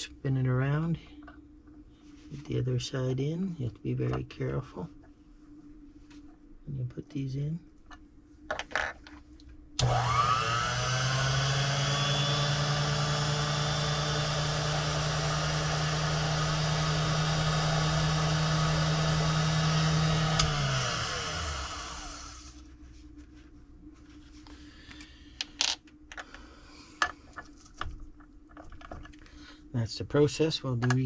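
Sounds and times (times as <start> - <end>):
small lathe motor running: 9.8 - 22.6.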